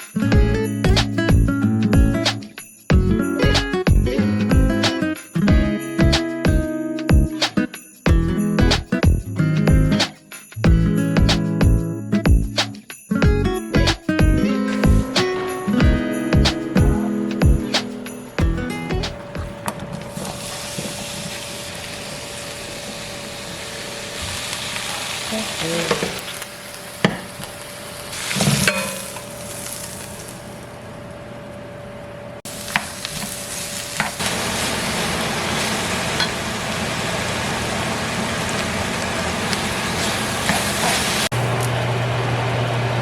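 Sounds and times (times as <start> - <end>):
food sizzling in a pan: 20.2 - 30.6, 32.5 - 42.9.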